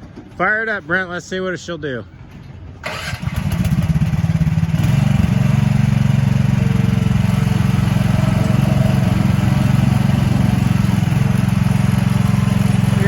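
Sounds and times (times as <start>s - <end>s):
small engine running steadily: 2.9s - 13.0s.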